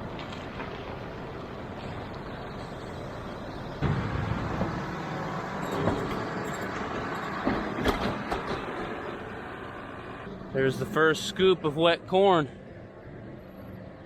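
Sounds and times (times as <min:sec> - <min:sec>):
loader engine running: 0:00.0 - 0:14.0.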